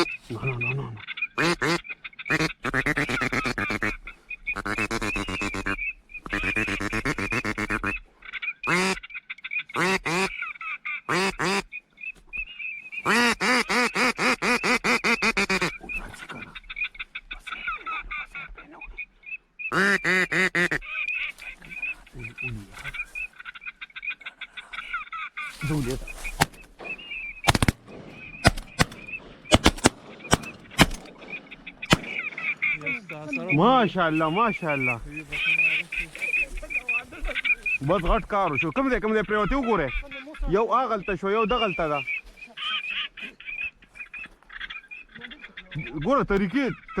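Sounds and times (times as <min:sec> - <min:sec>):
ducks quacking: 0:00.0 - 0:47.0
shotgun shots: 0:26.3 - 0:33.1.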